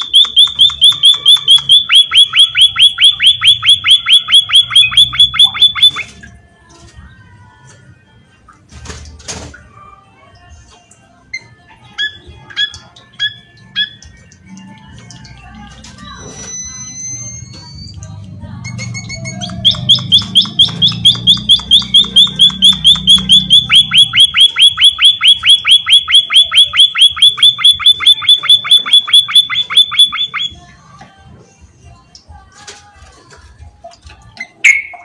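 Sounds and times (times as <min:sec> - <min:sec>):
bird calling repeated notes: 0:00.0 - 0:06.2, 0:18.7 - 0:30.6.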